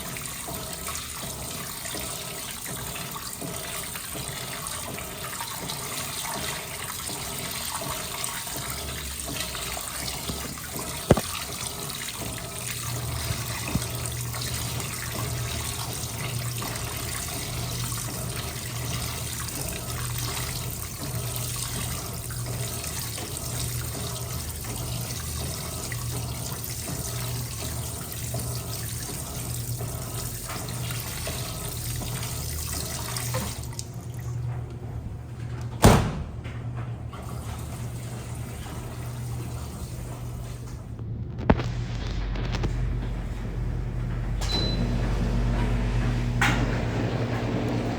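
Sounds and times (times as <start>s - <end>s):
water running in washing machine: 0.0s - 47.9s
low hum: 40.9s - 47.9s.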